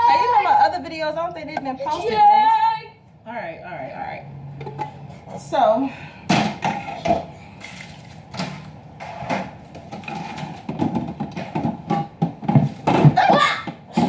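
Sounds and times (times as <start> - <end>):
kitchen items knocking and clattering: 4.6 - 5.1, 6.3 - 14.0.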